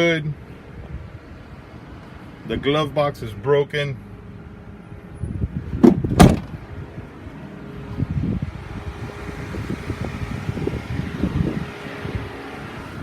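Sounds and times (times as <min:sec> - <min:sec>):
truck door shutting: 0:05.8 - 0:06.6.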